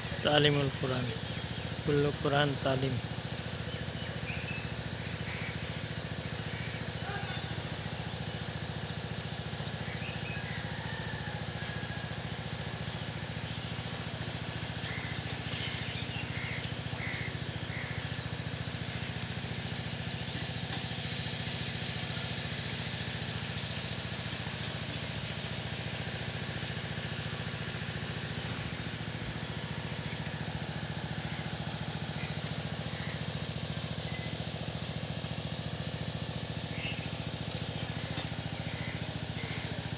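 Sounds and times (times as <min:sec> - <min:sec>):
faint bird chirps: 0:24.9 - 0:25.4.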